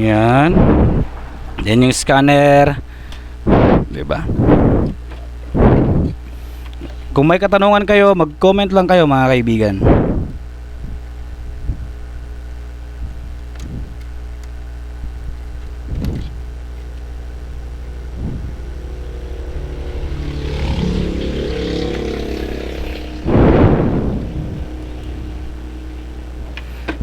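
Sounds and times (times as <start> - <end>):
rushing sound with faint tone: 0.0 - 7.0, 16.9 - 27.0
steady low hum: 0.0 - 27.0.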